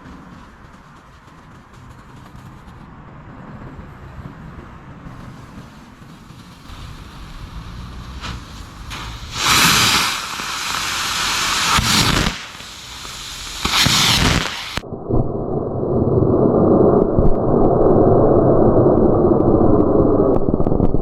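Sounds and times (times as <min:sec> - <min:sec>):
fireworks hissing: 0:00.0 - 0:14.8.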